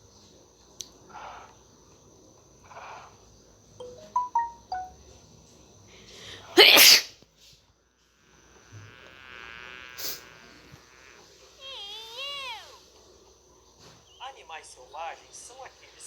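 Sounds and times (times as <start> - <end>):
quavering animal call: 9.9 - 12.9
animal chirps: 11.6 - 12.8.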